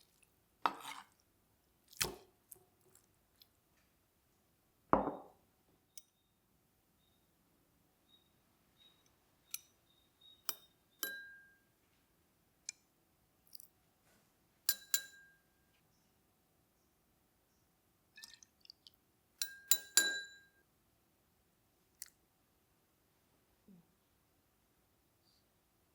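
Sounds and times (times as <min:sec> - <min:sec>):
kitchenware clinking against glass: 0:10.5 - 0:11.5, 0:14.7 - 0:15.3, 0:19.4 - 0:20.5.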